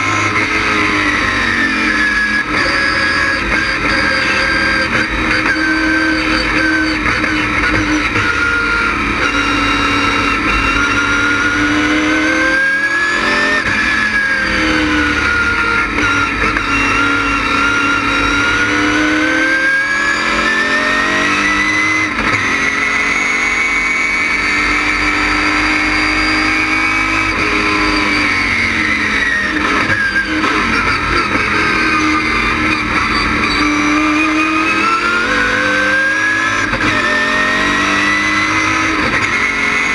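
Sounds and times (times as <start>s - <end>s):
race car engine running hard: 0.0s - 39.9s.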